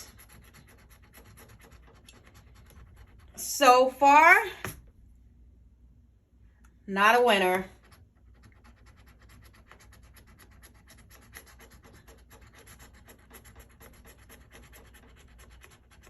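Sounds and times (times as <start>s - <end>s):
scraping lottery ticket coating: 7.7s - 16.0s.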